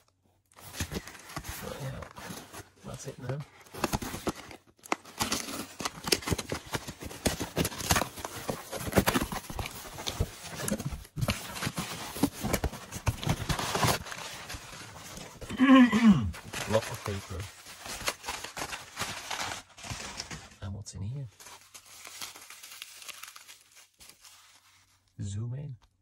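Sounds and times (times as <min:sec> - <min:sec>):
paper and cardboard crackling: 0:00.0 - 0:20.7, 0:21.3 - 0:25.2.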